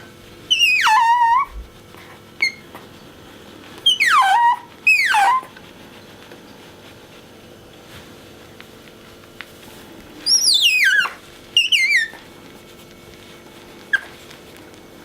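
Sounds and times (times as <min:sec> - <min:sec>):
otter squeaking: 0:00.5 - 0:01.7, 0:02.4 - 0:02.8, 0:03.8 - 0:05.6, 0:10.2 - 0:12.2.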